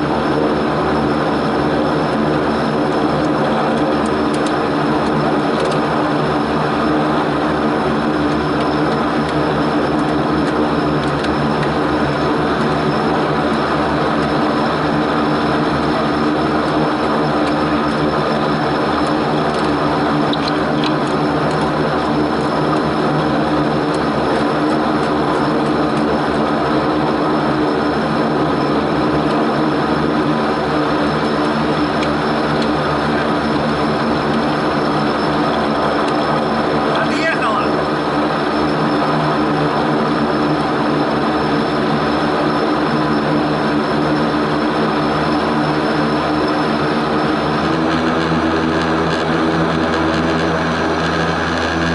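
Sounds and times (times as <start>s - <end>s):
turboprop engines droning: 0.0s - 51.9s.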